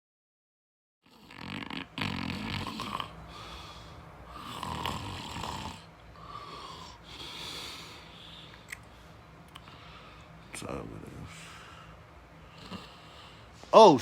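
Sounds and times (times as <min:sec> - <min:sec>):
person snoring: 0:01.1 - 0:08.1, 0:12.4 - 0:13.5.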